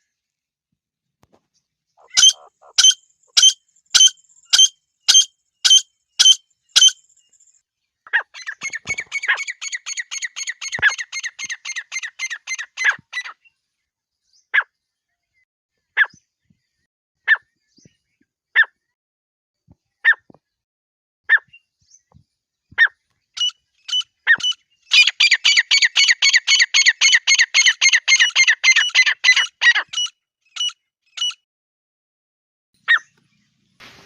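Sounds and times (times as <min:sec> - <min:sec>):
partridge calls: 0:02.0 - 0:07.0, 0:08.1 - 0:13.3, 0:22.8 - 0:31.4.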